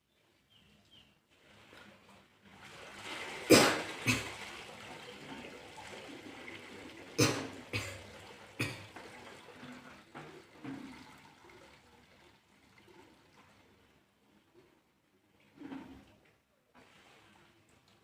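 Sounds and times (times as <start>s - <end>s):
person coughing and spitting: 3.5s - 4.4s, 7.2s - 8.9s.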